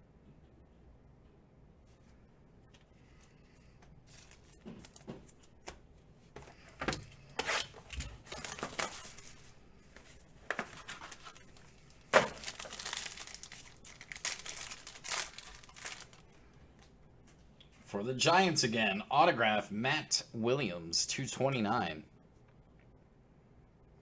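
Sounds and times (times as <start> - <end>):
cards being handled: 2.7 - 17.4
card pack wrappers tearing: 4.1 - 5.1, 7.0 - 9.5, 10.4 - 16.4.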